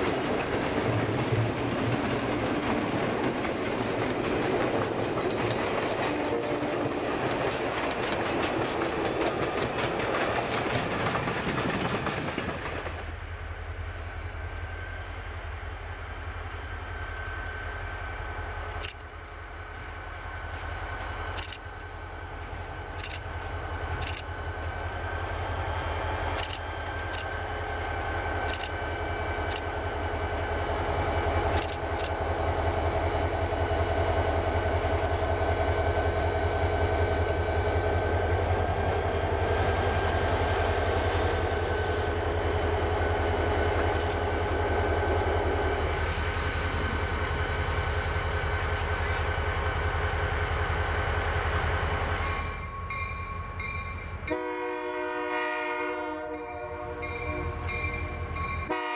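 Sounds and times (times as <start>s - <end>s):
diesel locomotive engine rumble: 0.0s - 58.9s
train horn: 6.0s - 7.1s, 54.3s - 58.9s.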